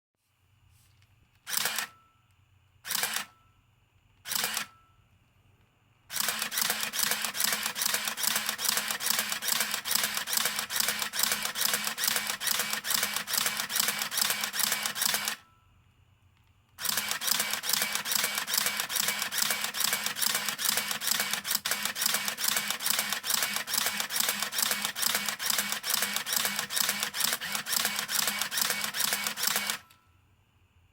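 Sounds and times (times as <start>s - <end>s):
rapid continuous camera shooting: 1.4s - 2.0s, 2.8s - 3.5s, 4.2s - 4.8s, 6.1s - 15.5s, 16.8s - 30.0s
camera motor winding on: 1.5s - 1.9s, 2.9s - 3.3s, 4.3s - 4.7s, 6.1s - 15.4s, 16.8s - 29.9s
camera shutter releases: 1.5s - 2.0s, 2.9s - 3.3s, 4.3s - 4.8s, 6.1s - 15.4s, 16.8s - 29.9s.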